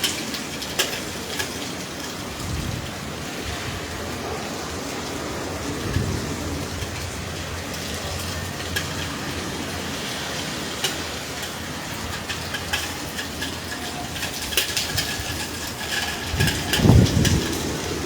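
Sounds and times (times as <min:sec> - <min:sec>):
low wind rumble: 0:00.0 - 0:18.0
rain hissing: 0:00.0 - 0:18.0.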